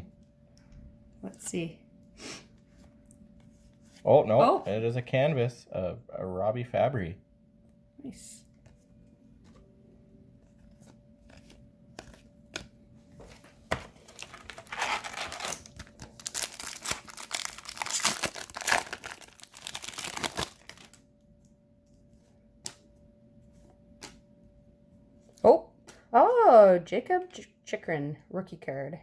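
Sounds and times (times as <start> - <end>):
wrapper crinkling: 13.3 - 21.0
foil card pack tearing: 13.7 - 21.0.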